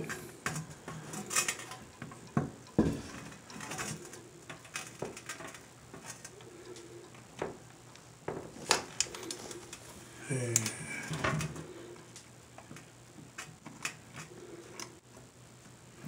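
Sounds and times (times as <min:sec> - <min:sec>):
porcelain toilet knocking and scraping: 0:02.4 - 0:03.3.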